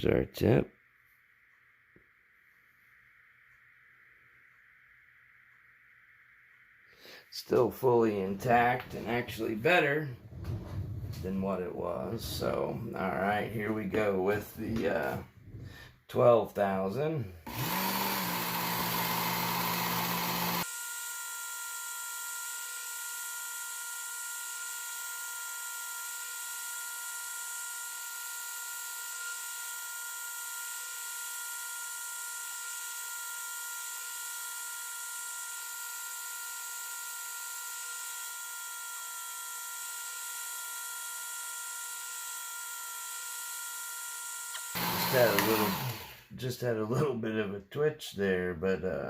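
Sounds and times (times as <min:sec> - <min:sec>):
belt sharpener motor whine: 0:17.4 - 0:46.3.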